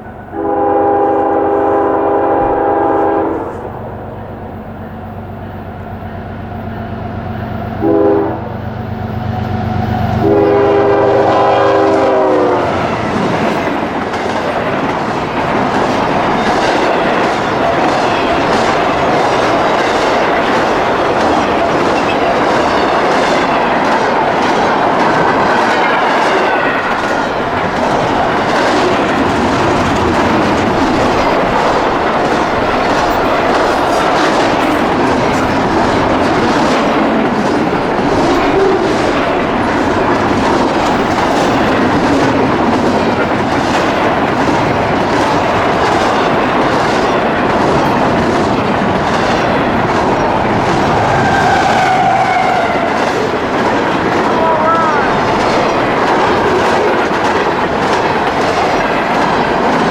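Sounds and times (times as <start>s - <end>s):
freight train rumble: 0.0s - 59.9s
train wheels clicking over rail joints: 4.3s - 59.9s.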